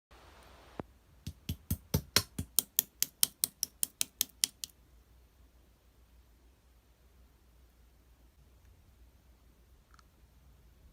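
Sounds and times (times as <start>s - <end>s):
slime clicking under fingers: 1.3s - 4.7s.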